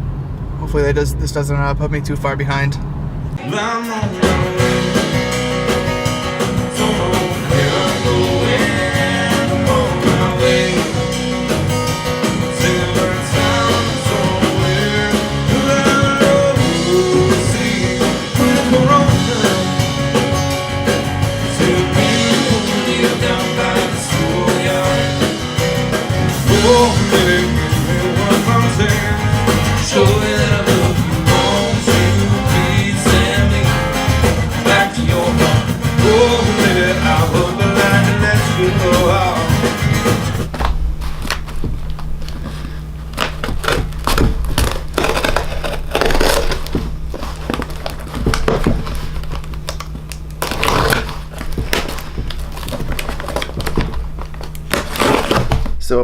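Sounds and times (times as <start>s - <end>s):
person singing: 3.4s - 5.4s, 6.5s - 11.4s, 12.4s - 20.5s, 21.4s - 25.6s, 26.4s - 39.9s
rock and roll band playing: 3.4s - 40.5s.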